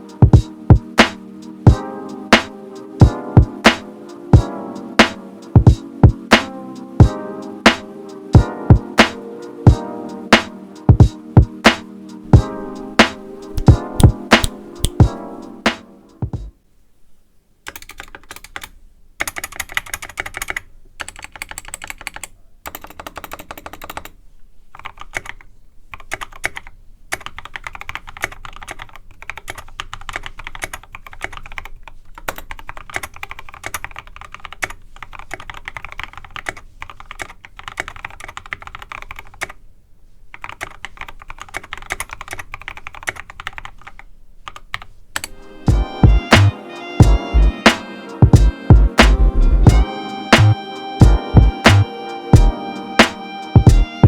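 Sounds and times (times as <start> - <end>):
mechanical keyboard typing: 12.4 - 15.2, 17.7 - 39.6, 40.3 - 45.4.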